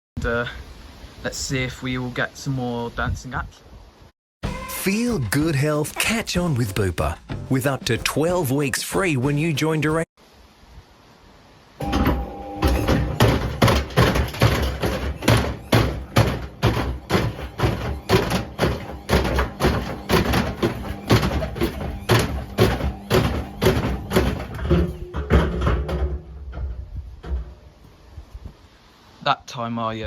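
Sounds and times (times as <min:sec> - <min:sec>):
washing machine running: 0:11.8 - 0:25.8
unbalanced drum knocking: 0:11.8 - 0:27.7.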